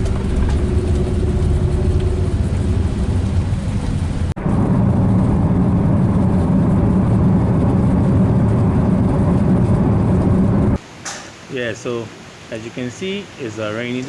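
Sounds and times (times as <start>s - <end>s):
car engine and tyre noise: 0.0s - 10.9s
low hum: 0.0s - 14.0s.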